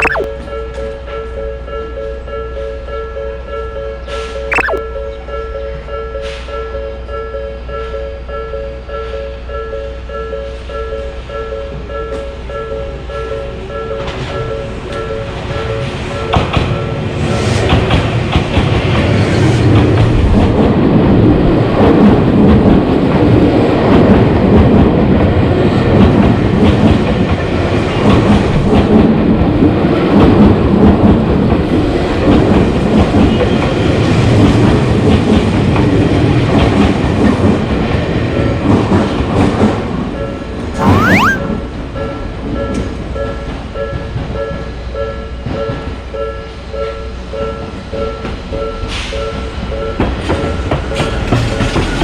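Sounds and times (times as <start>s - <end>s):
train wheels clacking on rails: 48.2s - 52.0s.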